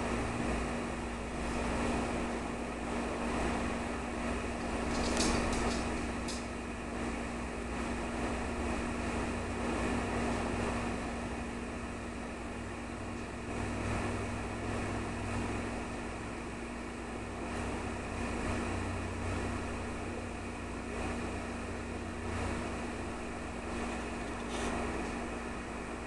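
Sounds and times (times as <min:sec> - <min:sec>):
steady mechanical hum: 0:00.0 - 0:26.0.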